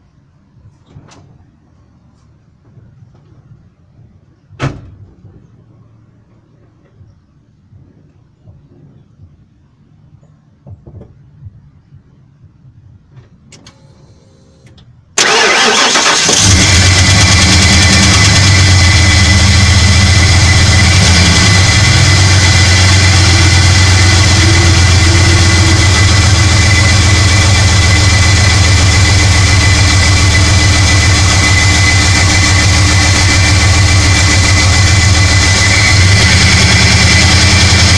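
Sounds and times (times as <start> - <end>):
engine cranking and idling: 13.6 - 37.9.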